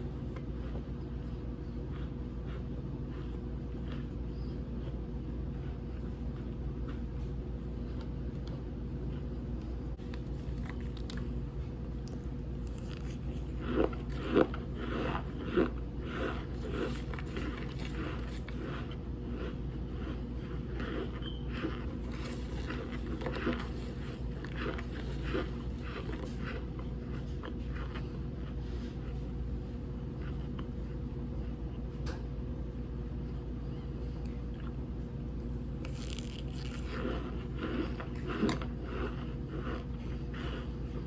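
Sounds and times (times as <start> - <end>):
steady low hum: 0.0 - 41.0
squeaky crunchy chewing: 10.0 - 28.6, 35.8 - 41.0.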